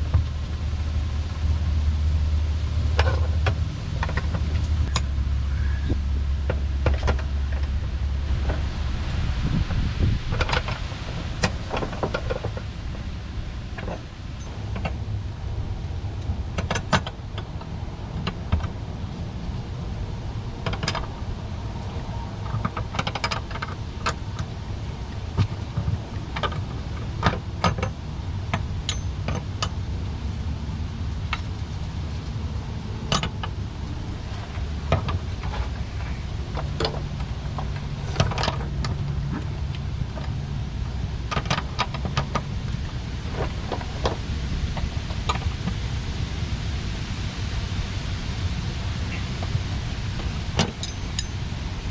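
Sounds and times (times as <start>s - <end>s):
steady low rumble: 0.0s - 51.9s
metallic clicks and clinks: 50.6s - 51.4s.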